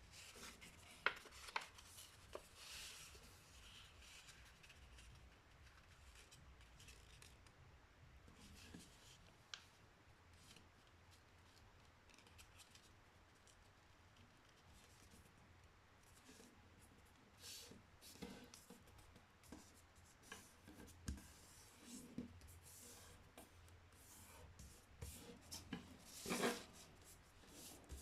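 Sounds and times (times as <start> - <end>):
paper rustling and crinkling: 0.2 - 7.4.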